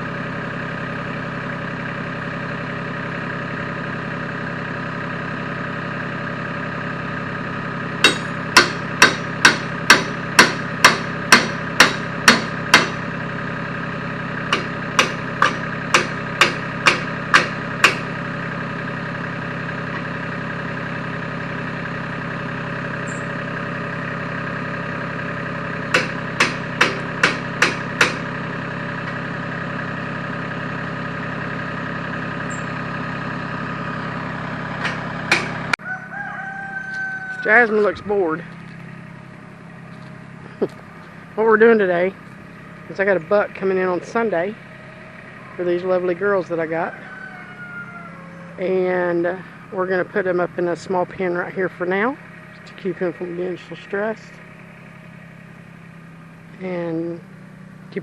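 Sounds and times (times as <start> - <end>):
engine idling: 0.0 - 58.0
hammer blows: 8.0 - 13.0.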